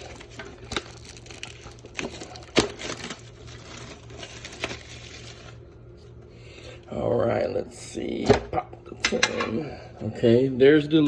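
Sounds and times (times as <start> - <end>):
scissors snipping packaging: 0.0 - 5.2.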